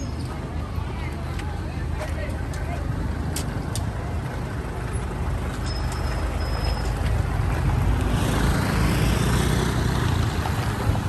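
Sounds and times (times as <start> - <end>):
vehicle engine passing: 7.3 - 11.0.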